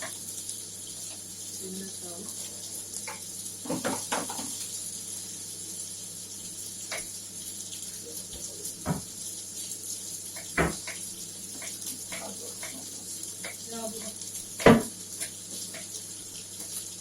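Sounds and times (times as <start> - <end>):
kitchen utensils clinking: 3.1 - 4.7.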